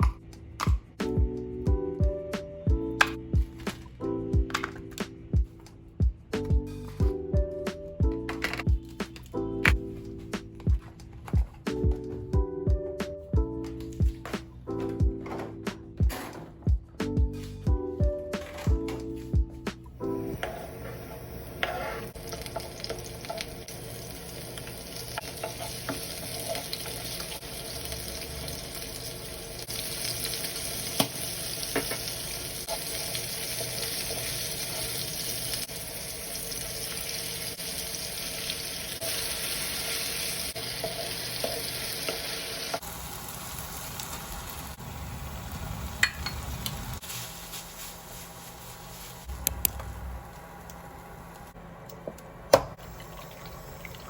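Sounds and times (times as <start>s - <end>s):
food sizzling in a frying pan: 20.3s - 49.3s.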